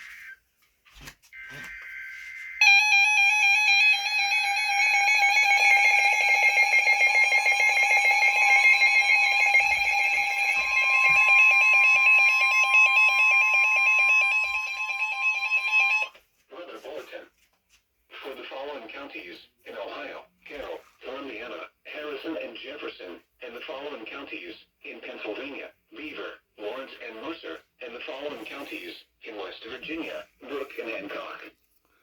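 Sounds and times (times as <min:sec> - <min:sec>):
data tone bursts: 0:01.4 - 0:03.6
steady high tone: 0:01.4 - 0:16.1
warbling electronic alert tone: 0:01.4 - 0:16.1.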